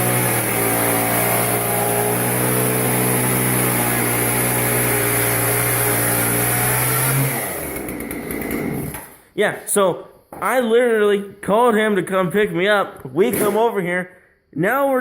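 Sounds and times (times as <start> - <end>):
power tool motor cutting: 0.0 - 9.2.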